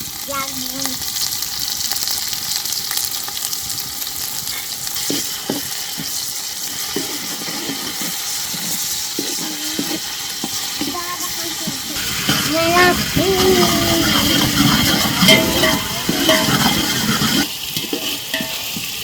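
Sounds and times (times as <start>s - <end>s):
food sizzling in hot oil: 0.0s - 19.0s
stirring in a pot: 4.3s - 19.0s.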